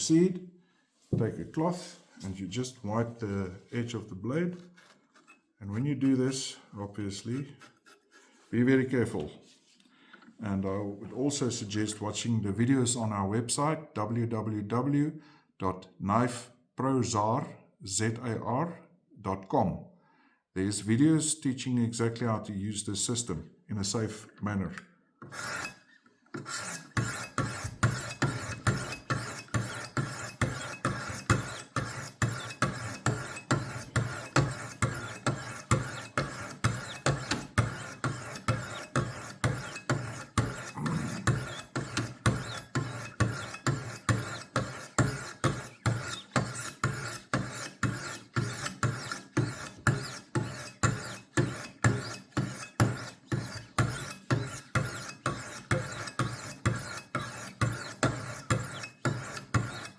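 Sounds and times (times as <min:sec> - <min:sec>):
sharpening stone rasping on knife: 0:04.5 - 0:06.4, 0:07.1 - 0:08.4, 0:25.3 - 0:59.9.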